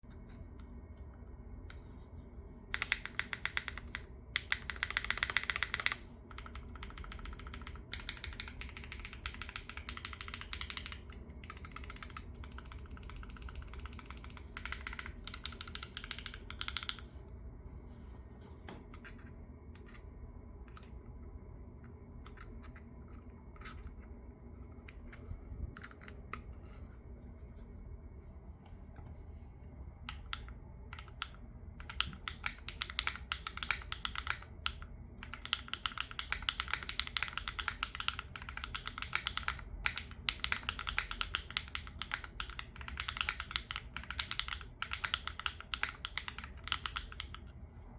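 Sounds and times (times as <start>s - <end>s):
typing on mechanical keyboard: 2.7s - 17.0s, 30.1s - 47.5s.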